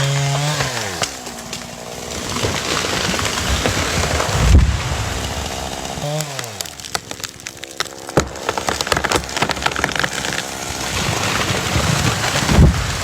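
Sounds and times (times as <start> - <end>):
rush of falling tree: 0.0 - 13.0
tree hitting ground thud: 0.0 - 13.0
tree trunk cracking and splintering: 0.0 - 13.0.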